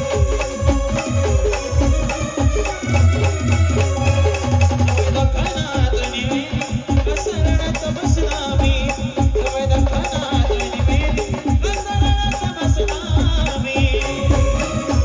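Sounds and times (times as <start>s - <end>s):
sustained melody line: 0.0s - 6.9s
heavy drum beat: 0.0s - 15.0s.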